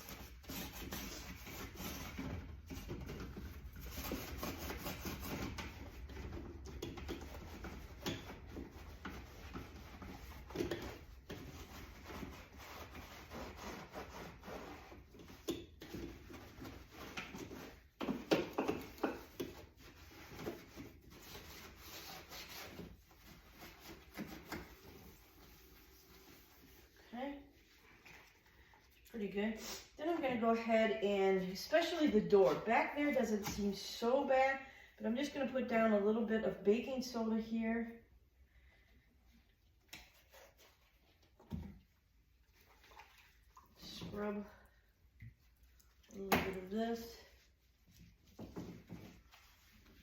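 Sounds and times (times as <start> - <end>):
scrubber pad rubbing inside dishwasher: 0.0 - 28.4, 46.5 - 50.0.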